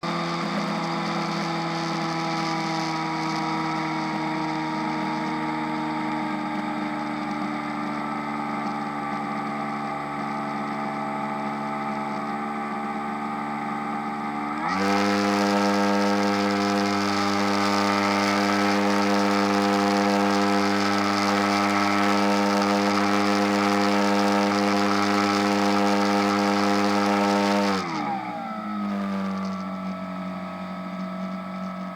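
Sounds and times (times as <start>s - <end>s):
model airplane engine: 0.0s - 31.9s.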